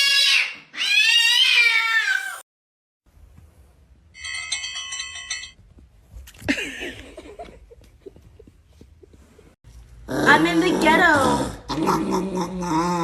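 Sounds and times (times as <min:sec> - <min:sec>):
bell-like ringing trill: 0:04.2 - 0:05.6.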